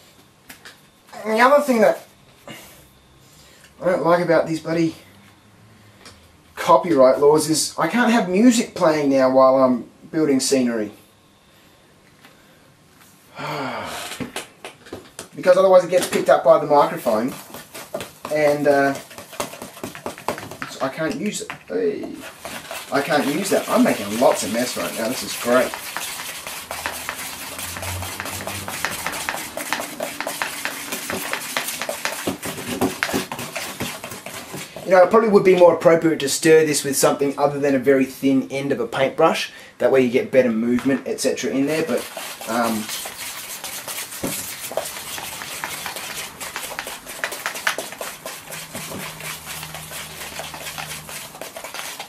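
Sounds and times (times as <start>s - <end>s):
paintbrush scraping gritty mix: 15.4s - 36.0s, 41.1s - 52.0s.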